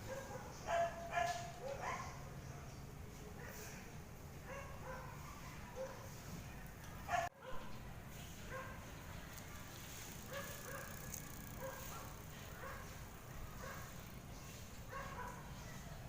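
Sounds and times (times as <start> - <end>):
dog barking faintly: 0.0 - 7.7, 10.2 - 14.1, 14.8 - 16.0.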